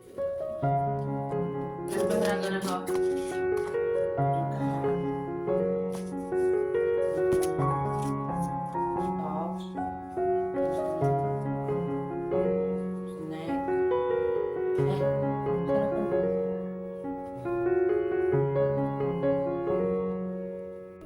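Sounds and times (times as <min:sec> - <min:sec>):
slow piano music: 0:00.0 - 0:21.0.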